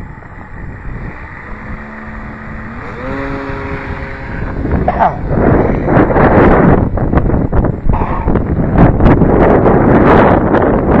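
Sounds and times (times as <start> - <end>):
model plane electric motor whining: 0.0 - 6.6
wind noise on microphone: 0.0 - 11.0.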